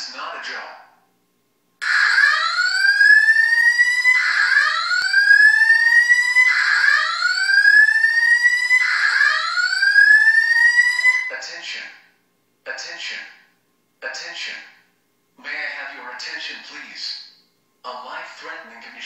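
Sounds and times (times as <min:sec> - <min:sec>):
fire alarm whoop tone: 0:01.8 - 0:11.3.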